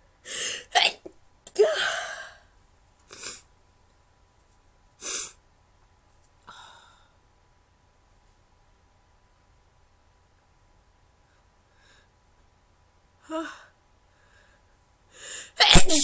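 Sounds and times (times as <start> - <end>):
breathing: 0.2 - 0.7, 6.5 - 7.2, 11.3 - 12.2, 13.4 - 15.6
woman sneezing: 1.6 - 2.3, 15.6 - 16.0
woman sniffing: 3.1 - 3.4, 5.0 - 5.4, 15.2 - 16.0.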